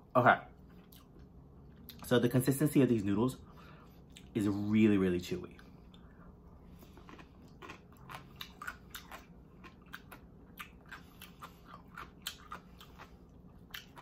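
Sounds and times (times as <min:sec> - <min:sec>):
chewing noodles: 0:05.5 - 0:14.0.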